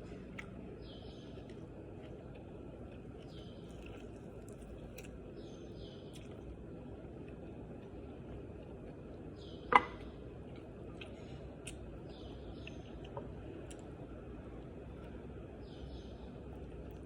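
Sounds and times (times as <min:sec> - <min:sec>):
small birds chirping: 0:00.0 - 0:08.2, 0:09.1 - 0:17.0
steady background hum: 0:00.0 - 0:17.0.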